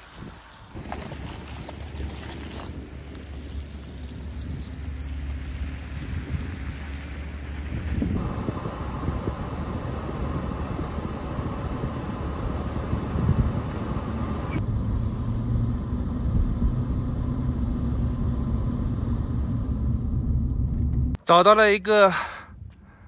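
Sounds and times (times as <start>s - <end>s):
truck engine and road rumble: 0.0s - 23.0s.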